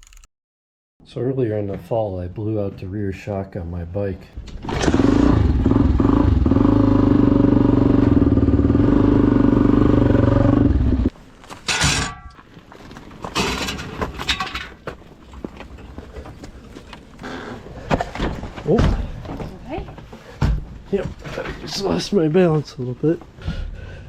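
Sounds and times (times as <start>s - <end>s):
motorcycle engine running: 4.7s - 11.1s.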